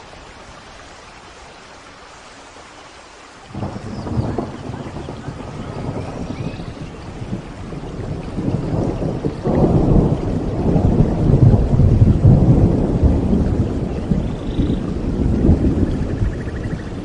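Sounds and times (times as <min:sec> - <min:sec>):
steady rain: 0:00.0 - 0:17.0
thunder rumbling: 0:03.5 - 0:17.0.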